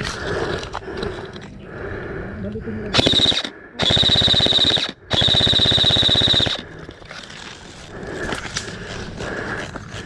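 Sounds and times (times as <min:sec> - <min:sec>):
airsoft rifle full auto burst: 0:03.0 - 0:06.7.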